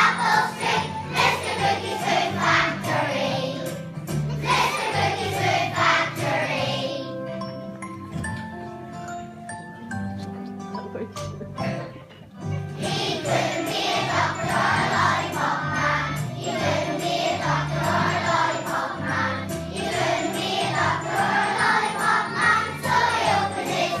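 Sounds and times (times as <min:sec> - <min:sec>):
musical backing with bass line: 0:00.0 - 0:24.0
group of voices singing: 0:12.8 - 0:24.0.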